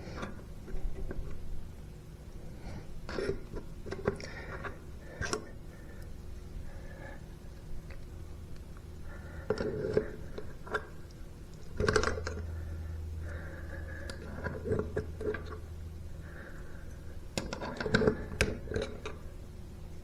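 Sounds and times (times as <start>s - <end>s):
metal pliers clicking on drain: 17.4s - 19.2s.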